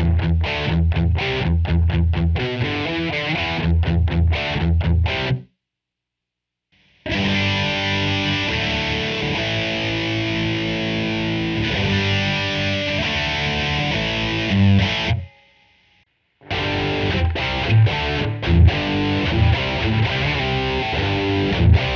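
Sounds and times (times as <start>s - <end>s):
distorted electric guitar chords: 0.0s - 5.5s, 6.8s - 21.9s.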